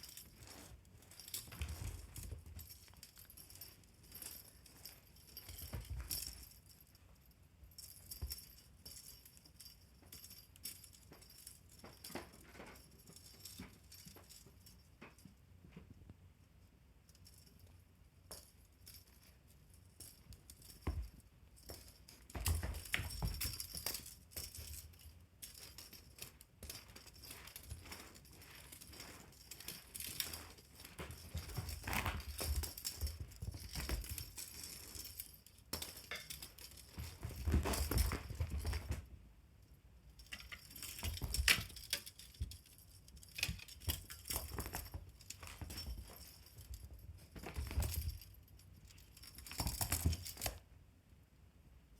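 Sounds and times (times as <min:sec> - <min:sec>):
toy rattling and clinking: 0:00.0 - 0:15.1, 0:17.1 - 0:39.1, 0:40.1 - 0:50.6
animals pouncing thumps: 0:29.0 - 0:34.4, 0:36.9 - 0:39.0.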